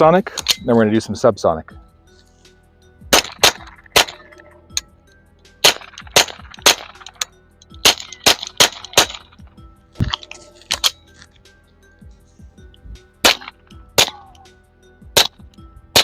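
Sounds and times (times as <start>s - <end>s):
suppressed pistol shots: 3.1s - 4.4s, 5.6s - 7.1s, 7.8s - 9.3s, 13.2s - 14.2s.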